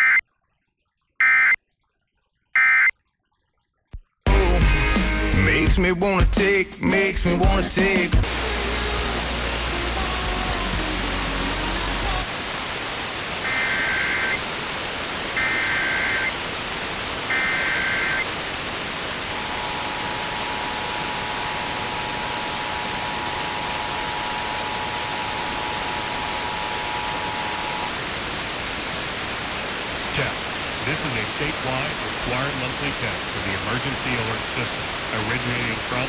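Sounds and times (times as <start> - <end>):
two-tone attention signal: 0.0 - 0.2, 2.6 - 2.9, 13.4 - 14.4, 15.4 - 16.4, 17.3 - 18.3, 19.2 - 28.0
radio static hiss: 8.2 - 36.0
warbling digital data screech: 13.4 - 14.4, 15.4 - 16.4, 17.3 - 18.3, 19.2 - 28.0.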